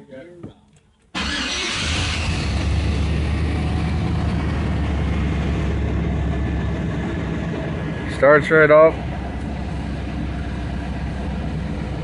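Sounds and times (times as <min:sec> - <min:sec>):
truck engine starting and idling: 0:01.1 - 0:12.0.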